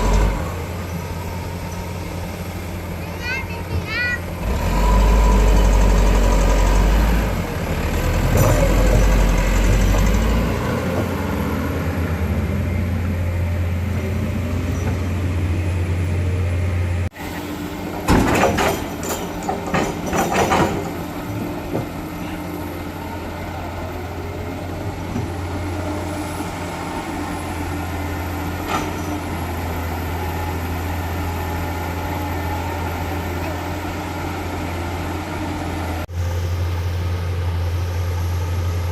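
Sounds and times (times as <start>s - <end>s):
heavy diesel engines humming: 0.0s - 38.9s
clanks and clatters: 18.1s - 22.0s.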